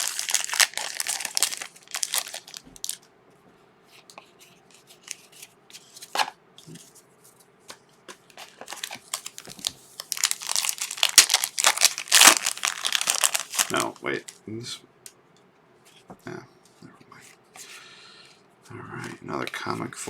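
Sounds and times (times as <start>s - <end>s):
card pack wrapper crinkling: 0.0s - 3.0s, 8.3s - 14.4s.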